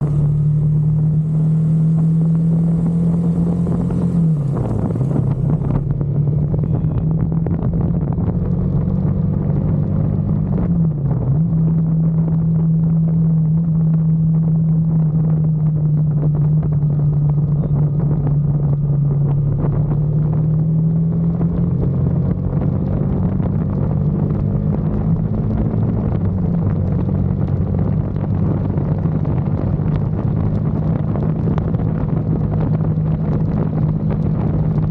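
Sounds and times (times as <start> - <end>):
single-cylinder motorcycle engine: 0.0 - 7.7.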